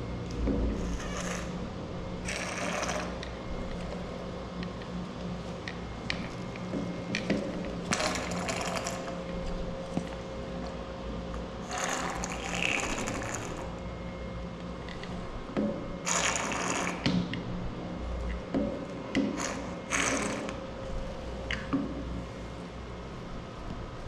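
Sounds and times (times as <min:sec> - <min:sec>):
scraping mechanical rattle: 0:02.2 - 0:03.3, 0:19.4 - 0:20.6.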